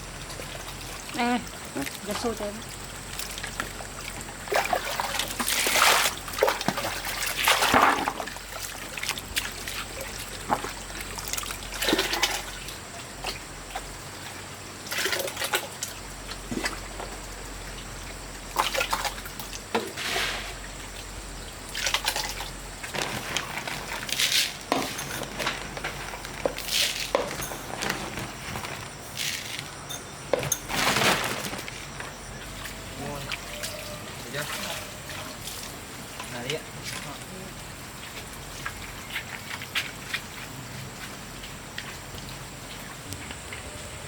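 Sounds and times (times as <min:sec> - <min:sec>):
water splashing and pouring: 0:00.0 - 0:29.7, 0:30.6 - 0:43.1.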